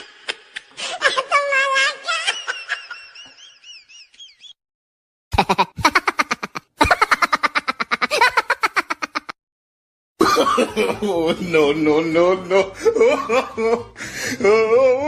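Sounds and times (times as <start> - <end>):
rapid pitched laughing: 5.3 - 9.4.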